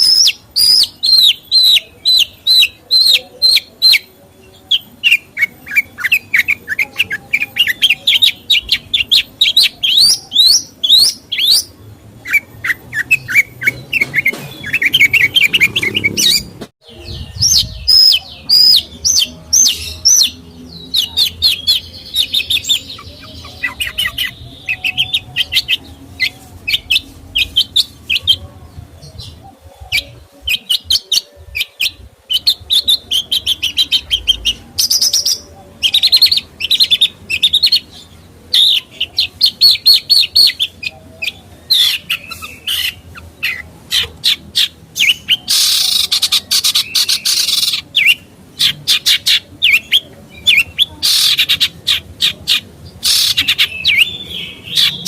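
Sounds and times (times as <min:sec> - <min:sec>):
songbird chirps and trills: 0:00.0 - 0:55.0
harsh rasping bird calls: 0:38.6 - 0:55.0.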